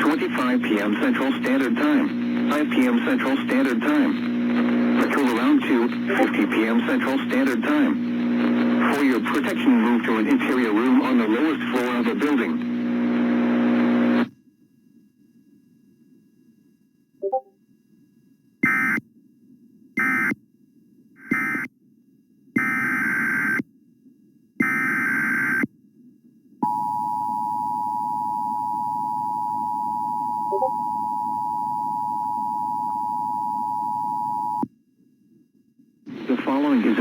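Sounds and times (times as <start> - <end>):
two-tone attention signal: 17.2 - 17.5, 26.7 - 34.6.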